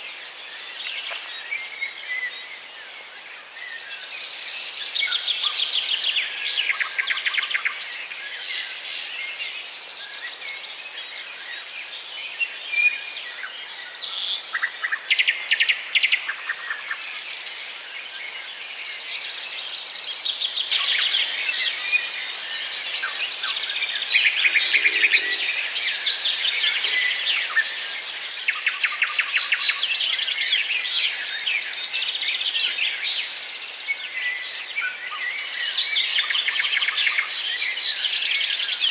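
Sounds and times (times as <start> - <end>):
small songbirds chirping: 17.3 - 38.9.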